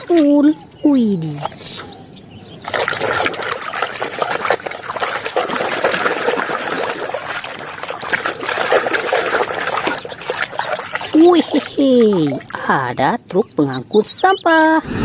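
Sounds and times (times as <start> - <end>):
water splashing on toy vehicle: 2.7 - 12.6.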